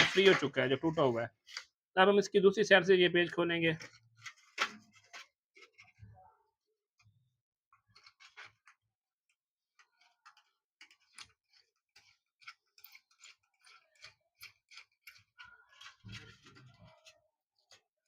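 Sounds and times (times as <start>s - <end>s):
metallic screw clicks and scrapes: 9.8s - 16.5s.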